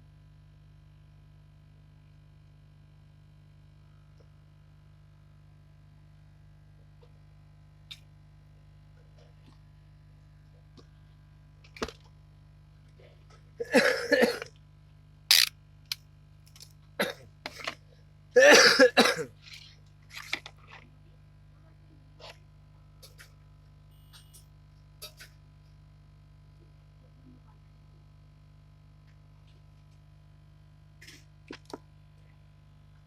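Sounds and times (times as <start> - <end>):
low electrical hum: 0.0 - 33.0
person coughing: 13.6 - 14.5, 18.4 - 19.3
short sharp clicks: 15.3 - 15.5.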